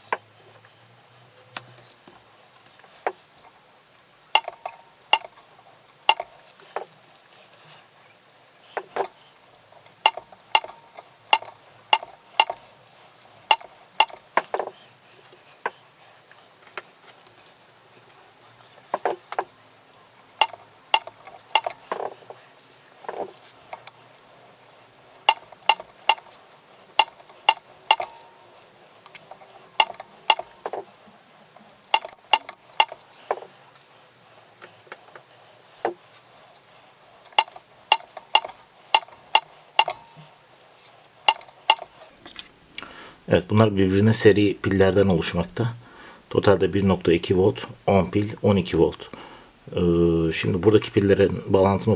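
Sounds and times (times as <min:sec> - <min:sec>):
sharp metallic clicks: 0:04.4 - 0:06.9, 0:08.8 - 0:14.8, 0:18.7 - 0:33.6, 0:35.8 - 0:42.1.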